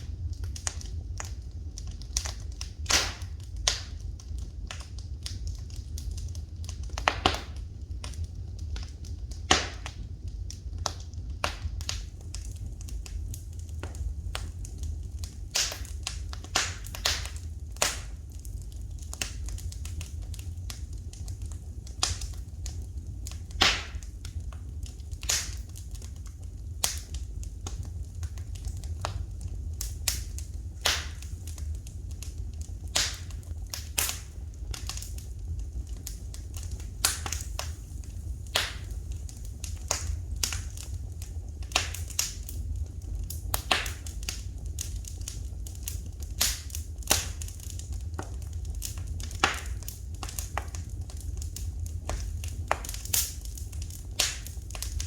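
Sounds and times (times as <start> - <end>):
sharp pops of fire: 0.0 - 55.0
steady low rumble: 0.0 - 55.0
wood fire crackling: 0.0 - 55.0.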